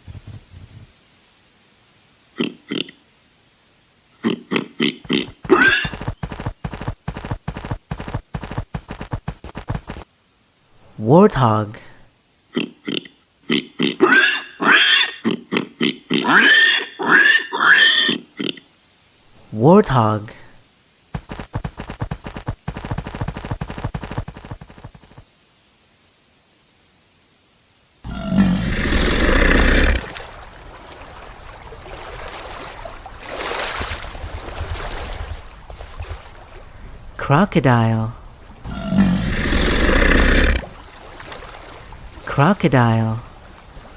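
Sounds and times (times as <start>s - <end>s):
warthog squealing: 5.1s - 6.0s, 28.1s - 30.2s, 38.6s - 40.7s
warthog grunting: 28.1s - 30.2s, 38.6s - 40.8s.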